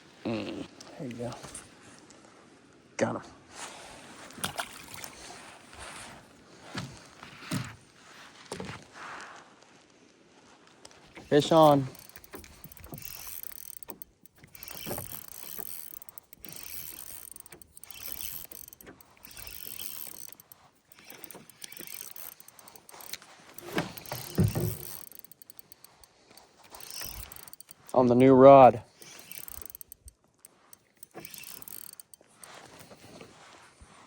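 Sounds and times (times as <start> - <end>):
fishing reel cranking: 4.4 - 5.2, 11.2 - 33.2.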